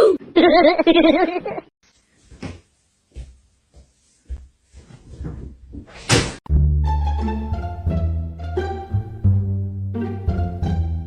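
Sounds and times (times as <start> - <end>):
plucked string music: 6.5 - 11.0.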